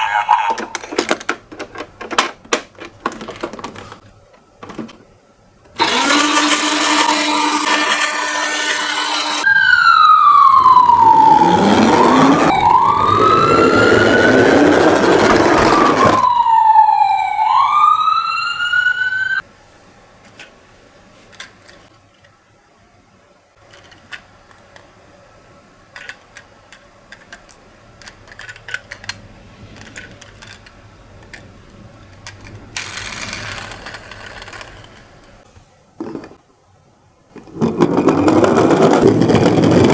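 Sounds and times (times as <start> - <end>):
toy electronic siren wailing: 0.0 - 0.8, 8.8 - 19.4.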